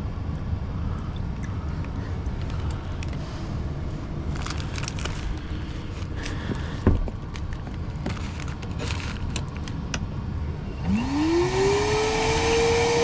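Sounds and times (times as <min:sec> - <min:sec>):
vacuum motor whining: 0:10.6 - 0:13.0.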